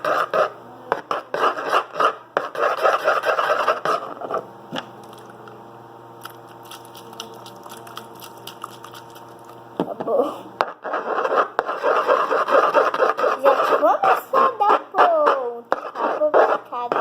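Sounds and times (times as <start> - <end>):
slime scraping on table: 10.6 - 17.0.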